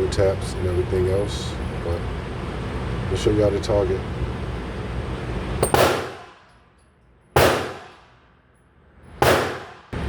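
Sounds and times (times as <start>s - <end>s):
loud gunshots: 5.6s - 6.4s, 7.4s - 8.0s, 9.2s - 10.0s.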